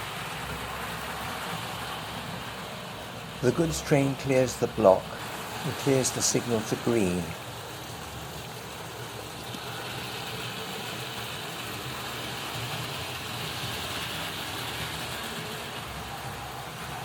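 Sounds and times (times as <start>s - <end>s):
model train motors whirring: 8.8s - 17.0s.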